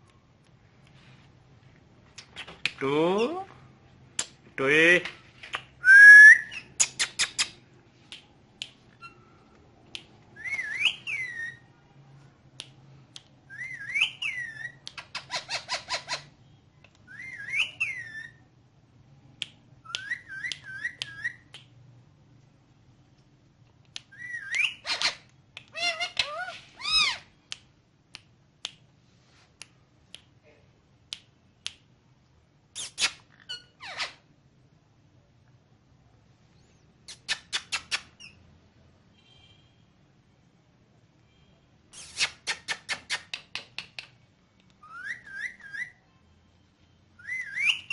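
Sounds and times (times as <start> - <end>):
parrot whistling: 5.8 - 6.7, 10.4 - 11.6, 17.1 - 18.4, 24.1 - 25.0, 44.8 - 46.0, 47.2 - 47.9
parrot rapid clicking: 42.2 - 44.2.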